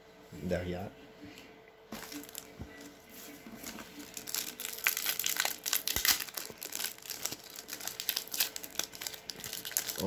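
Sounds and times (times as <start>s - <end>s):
plastic wrapper crinkling: 2.0s - 2.6s, 3.6s - 10.0s.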